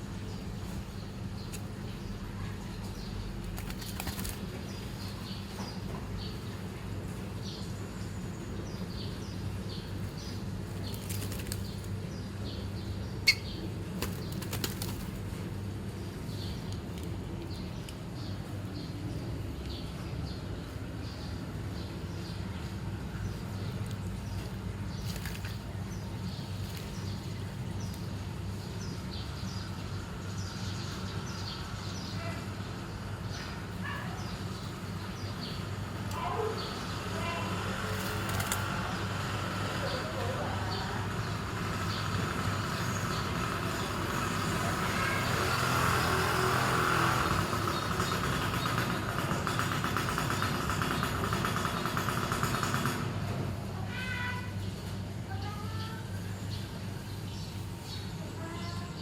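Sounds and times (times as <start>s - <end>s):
bird wings flapping: 3.4s - 4.6s, 10.6s - 11.9s, 13.9s - 15.3s, 25.0s - 25.7s, 37.9s - 38.8s.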